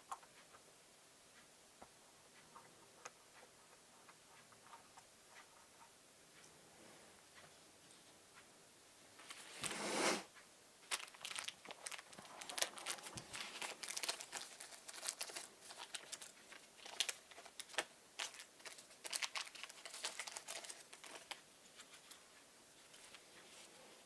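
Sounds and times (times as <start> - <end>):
crinkly plastic rustling: 10.8 - 24.0.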